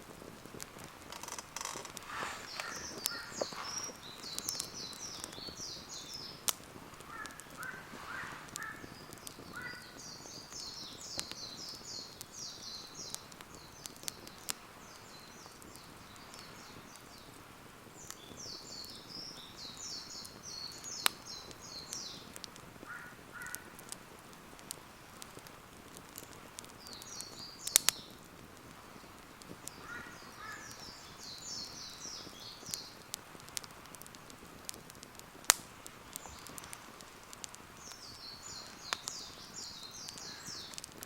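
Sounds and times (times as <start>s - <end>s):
campfire crackling and popping: 0.0s - 41.0s
low bird call: 1.7s - 6.4s, 7.1s - 17.1s, 18.1s - 23.9s, 29.7s - 33.0s, 37.8s - 40.8s
birds singing high notes: 2.2s - 6.4s, 7.1s - 15.9s.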